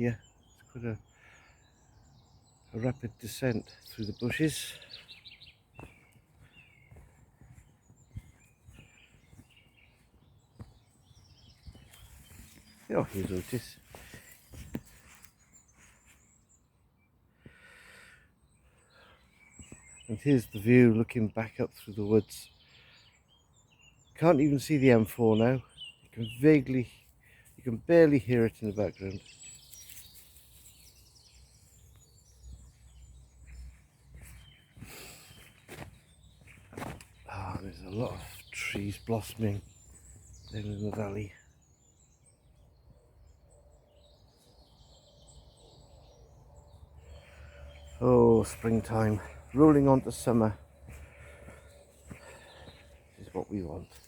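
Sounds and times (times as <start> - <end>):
faint birdsong: 0.0 - 54.0
distant motorway traffic hum: 25.7 - 54.0.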